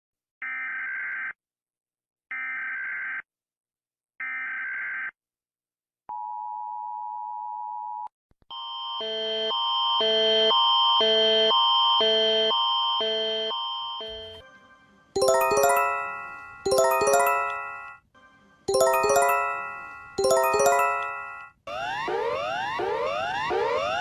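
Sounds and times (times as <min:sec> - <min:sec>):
multi-tone alert pattern: 0:15.2 - 0:18.0, 0:18.7 - 0:21.5.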